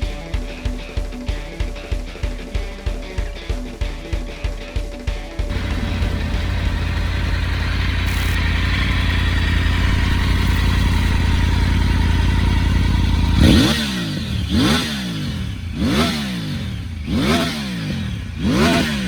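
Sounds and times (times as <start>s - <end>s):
motorcycle engine idling: 5.4s - 19.0s
engine throttle rev: 5.5s - 19.0s.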